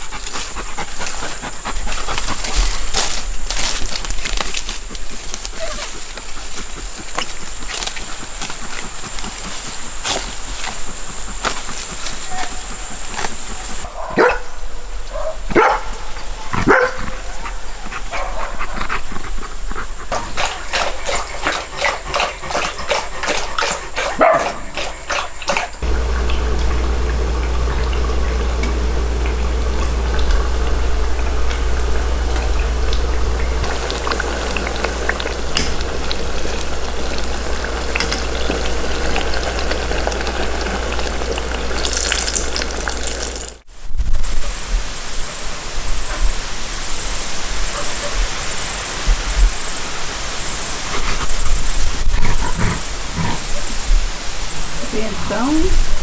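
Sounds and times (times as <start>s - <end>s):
dogs barking and yipping: 8.7s - 43.6s.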